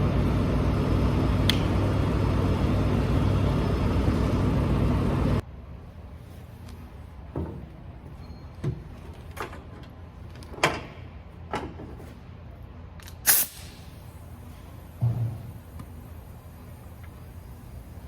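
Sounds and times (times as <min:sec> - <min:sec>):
knocks and clunks: 0:15.0 - 0:15.6.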